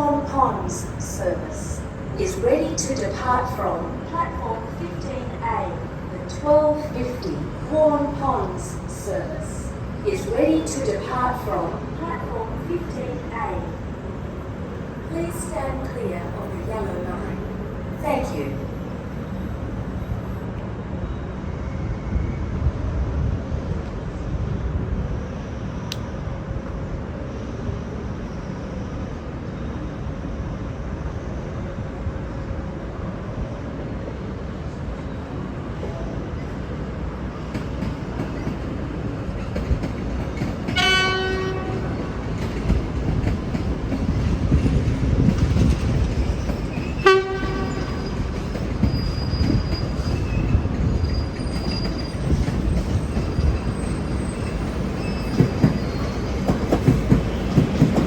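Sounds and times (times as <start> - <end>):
diesel train engine rumble: 0.0 - 58.0
rail noise: 0.0 - 58.0
low train horn blasts: 40.7 - 42.1, 46.9 - 48.3.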